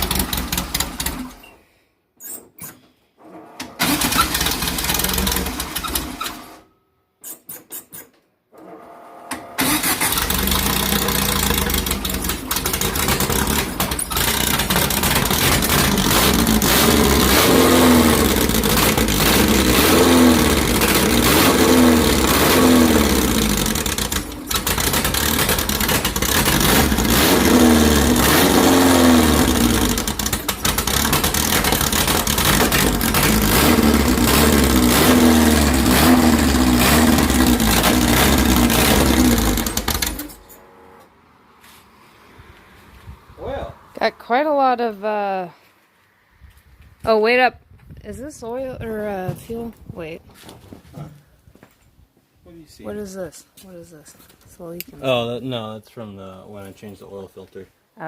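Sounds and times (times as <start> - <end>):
car engine starting and revving: 0.0 - 1.4, 3.6 - 6.6, 9.6 - 44.1.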